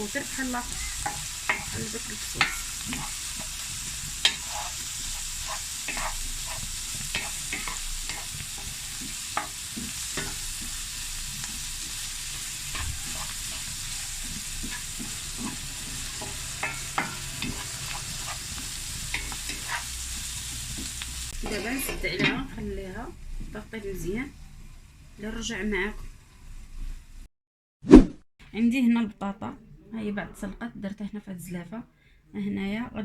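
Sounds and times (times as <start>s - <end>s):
utensil scraping a pan: 0.0s - 22.5s
meat sizzling in a frying pan: 0.0s - 27.2s.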